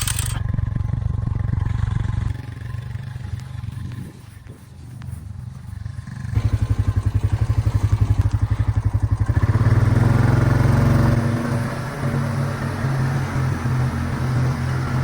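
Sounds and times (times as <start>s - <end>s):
four-wheeler engine chugging: 0.0s - 15.0s.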